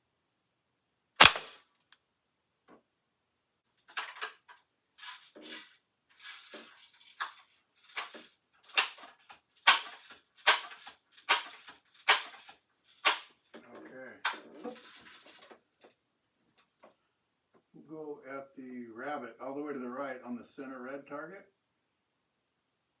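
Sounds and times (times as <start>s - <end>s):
air rifle shot: 1.2s - 1.6s
short sharp noises: 1.2s - 1.6s.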